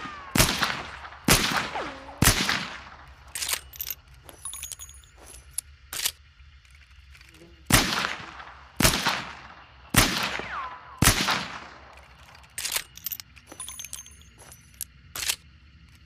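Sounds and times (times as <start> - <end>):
pistol shots: 0.0 - 3.8, 7.7 - 12.9
metallic clicks and clinks: 3.0 - 7.4, 11.9 - 16.0.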